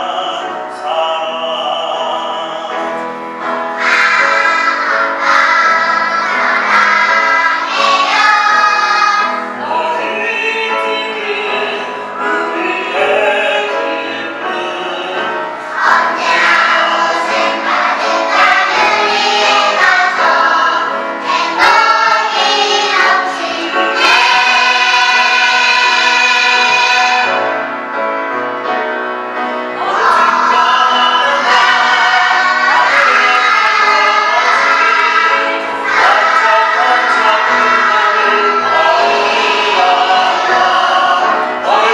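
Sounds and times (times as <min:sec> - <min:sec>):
children's choir singing: 0:00.0 - 0:41.9.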